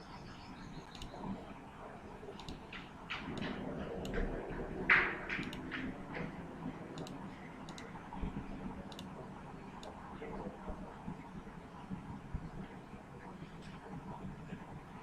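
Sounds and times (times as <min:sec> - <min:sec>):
computer mouse clicks: 0:00.8 - 0:01.3, 0:02.4 - 0:04.4, 0:05.3 - 0:05.8, 0:06.9 - 0:08.0, 0:08.9 - 0:09.2.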